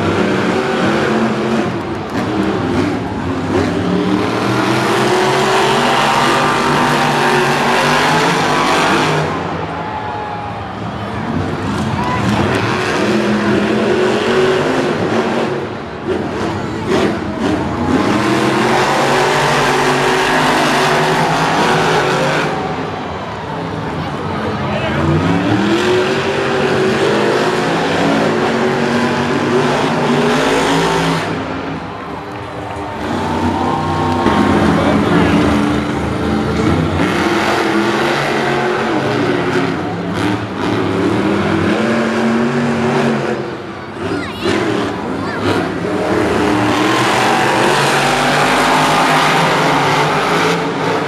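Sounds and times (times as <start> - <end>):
monster truck engines running: 0.0 - 51.0.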